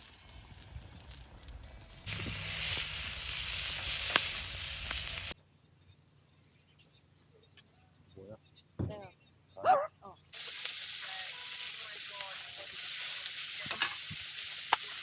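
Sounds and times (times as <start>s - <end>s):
food sizzling in a pan: 0.0s - 5.4s, 10.4s - 15.0s
sharp pops: 2.0s - 5.4s.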